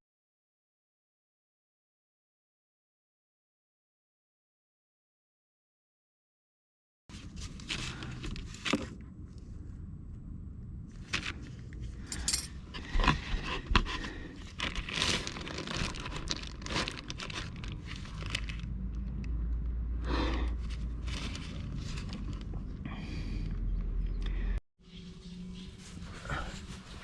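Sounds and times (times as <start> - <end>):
objects scraping and rustling: 20.6 - 22.7.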